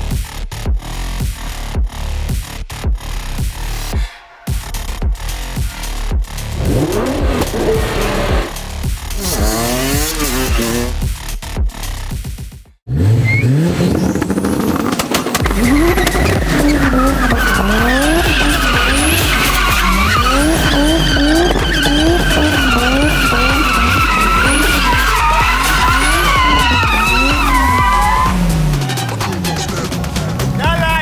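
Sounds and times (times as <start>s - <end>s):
car engine revving: 4.6s - 11.9s, 12.9s - 31.0s
tyres squealing: 6.6s - 10.9s, 13.1s - 31.0s.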